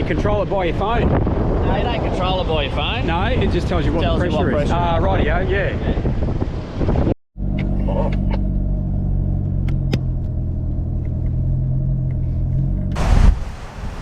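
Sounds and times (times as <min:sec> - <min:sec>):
vehicle engine low hum: 0:07.4 - 0:14.0.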